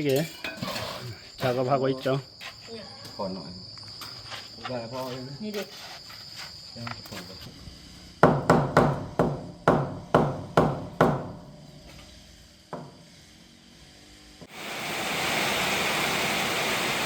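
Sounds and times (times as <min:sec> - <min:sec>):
heavy rain hissing: 0:14.5 - 0:17.0.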